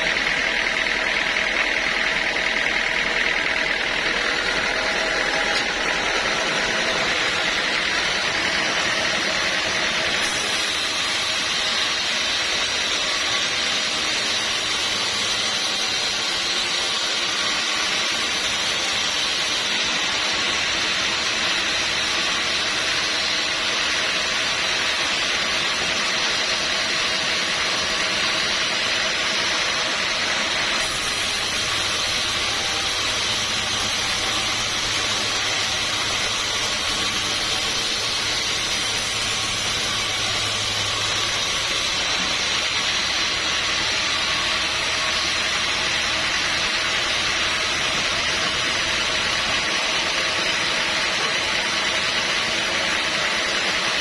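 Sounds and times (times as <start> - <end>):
band saw running: 0.0 - 54.0.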